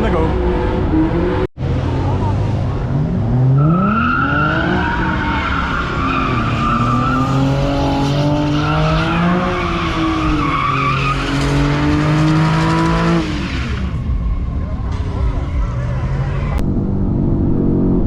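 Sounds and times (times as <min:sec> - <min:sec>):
car engine revving: 0:00.0 - 0:18.0
tires squealing: 0:03.3 - 0:16.6.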